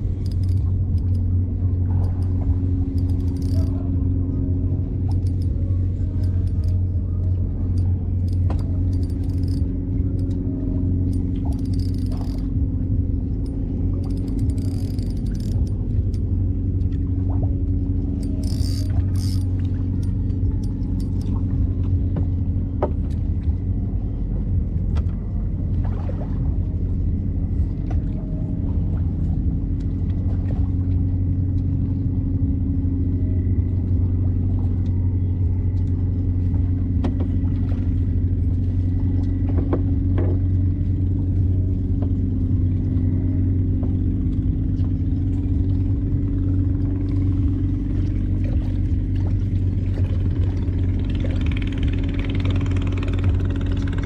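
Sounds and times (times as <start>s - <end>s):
engine running steadily: 0.0s - 54.0s
faint clicks: 5.0s - 10.4s.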